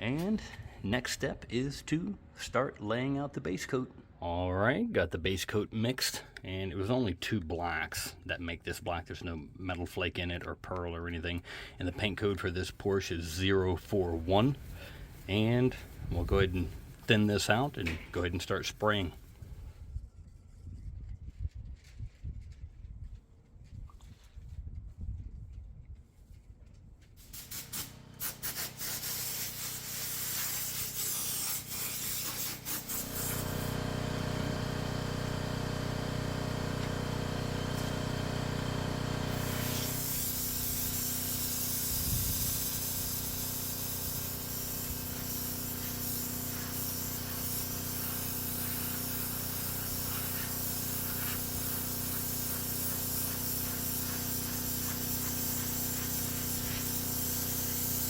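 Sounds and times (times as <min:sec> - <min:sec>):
paint spray gun hissing: 0:12.8 - 0:19.2, 0:27.2 - 0:58.0
motor hum: 0:32.6 - 0:58.0.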